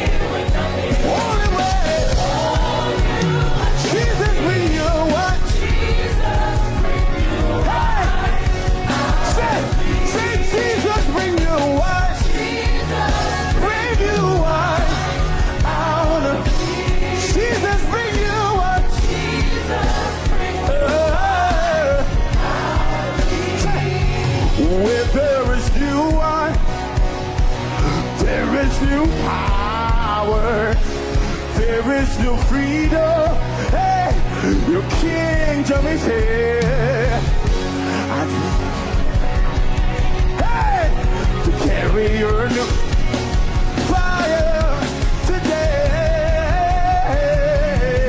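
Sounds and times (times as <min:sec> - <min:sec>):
person singing wordless vocal lines: 0:00.0 - 0:26.7, 0:27.7 - 0:38.7
band playing gospel music: 0:00.0 - 0:48.0.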